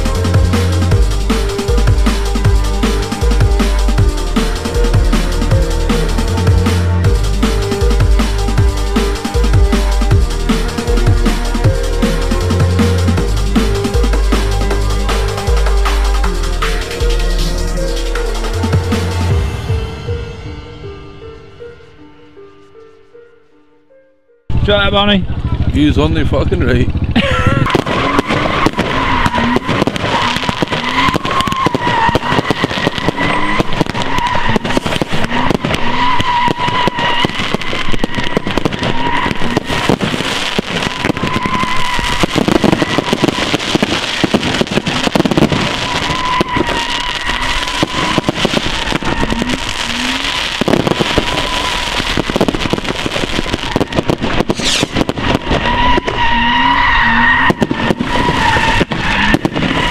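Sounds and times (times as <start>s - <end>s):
car engine revving: 0.0s - 19.4s, 25.2s - 59.9s
tyres squealing: 27.7s - 52.8s, 53.4s - 59.9s.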